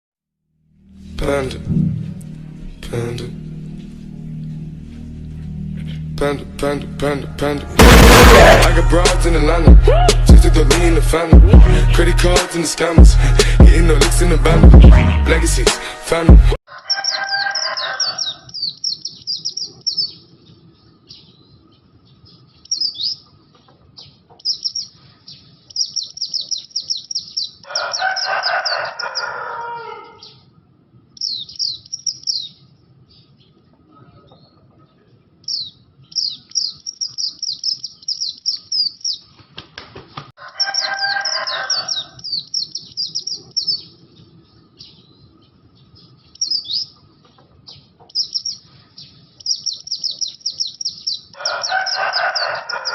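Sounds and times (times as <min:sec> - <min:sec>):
rough chattering burst: 0:07.8 - 0:09.5
bird singing high thin chirps: 0:17.0 - 0:20.2, 0:22.2 - 0:23.3, 0:24.0 - 0:29.4, 0:31.2 - 0:32.6, 0:35.4 - 0:39.3, 0:40.6 - 0:44.0, 0:44.8 - 0:47.0, 0:47.7 - 0:52.9.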